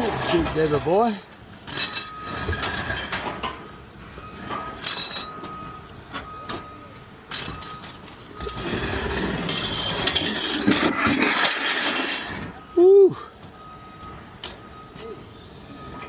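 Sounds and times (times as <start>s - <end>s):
vehicle backup alarm beeping: 0.0s - 9.3s, 10.7s - 16.0s
engine noise: 0.0s - 16.0s
clattering rush: 8.3s - 12.6s.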